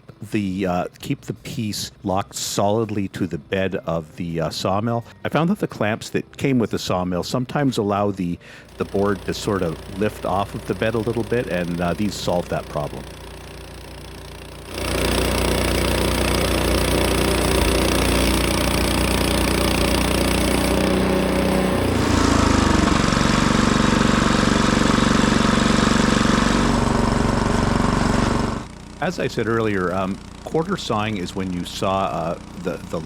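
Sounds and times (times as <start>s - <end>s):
small gasoline engine running: 8.4s - 33.0s.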